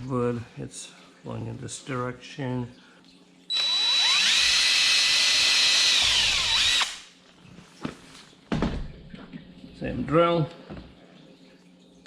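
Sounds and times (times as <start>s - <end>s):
power drill driving screw: 3.5s - 7.1s.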